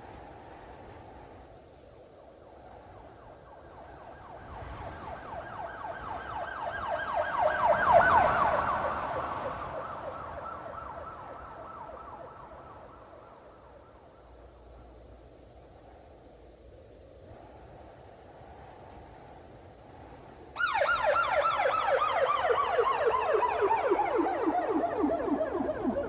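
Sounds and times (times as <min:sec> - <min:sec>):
police siren yelping: 0:05.3 - 0:12.8, 0:20.6 - 0:26.0.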